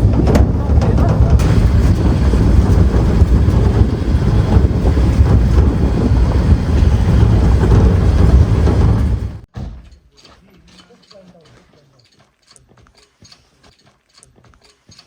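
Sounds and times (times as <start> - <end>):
engine and tyres rumbling: 0.0 - 9.5
wind buffeting microphone: 0.0 - 9.5.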